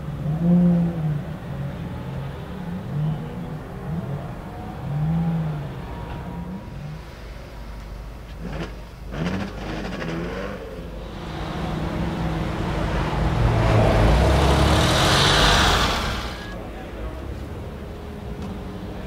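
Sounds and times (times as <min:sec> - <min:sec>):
car approaching: 0:00.0 - 0:19.0
car engine revving: 0:08.3 - 0:16.6.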